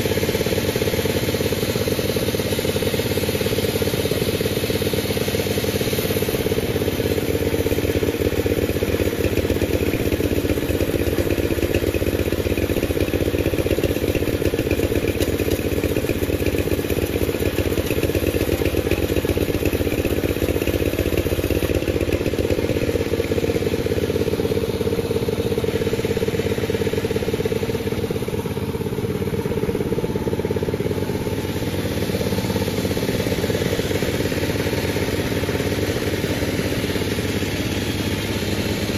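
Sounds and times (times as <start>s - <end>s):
sawmill engine running: 0.0s - 38.9s.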